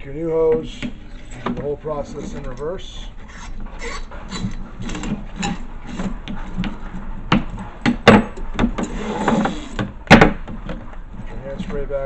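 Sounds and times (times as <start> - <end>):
hose rubbing and scraping: 0.2 - 7.8, 8.8 - 9.8, 11.1 - 12.0.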